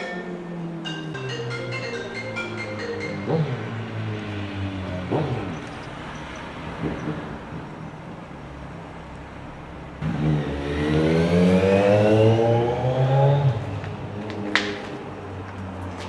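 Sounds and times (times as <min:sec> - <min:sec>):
motorcycle engine accelerating: 0:00.5 - 0:08.2, 0:10.0 - 0:14.9.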